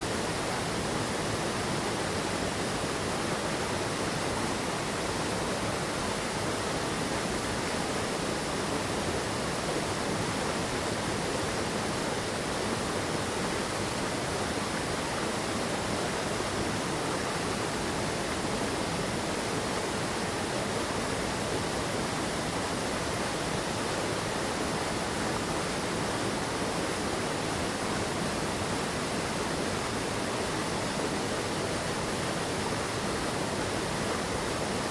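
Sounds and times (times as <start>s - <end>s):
stream water rushing: 0.0s - 34.9s.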